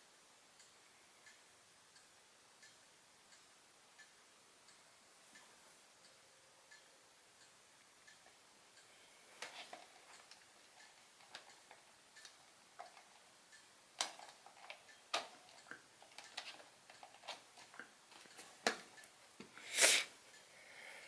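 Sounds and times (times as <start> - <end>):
faint clicks and ticks: 0.5 - 20.6.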